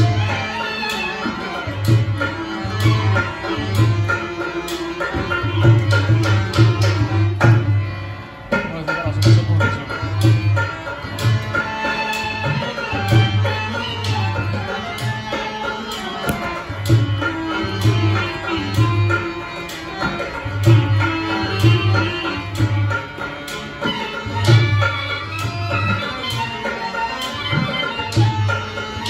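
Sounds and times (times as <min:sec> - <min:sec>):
melodic folk instrument: 0:00.0 - 0:29.0
hand drums booming: 0:16.1 - 0:19.4.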